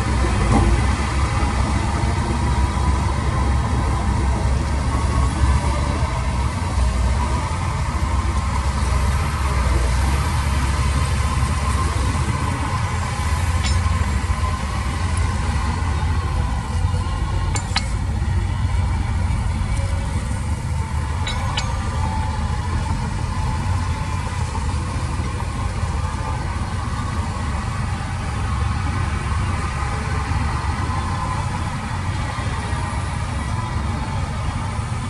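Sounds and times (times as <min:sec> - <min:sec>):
diesel engine rumble: 0:00.0 - 0:35.0
sharp metallic clinks: 0:13.4 - 0:14.6, 0:17.5 - 0:18.1, 0:21.0 - 0:23.4.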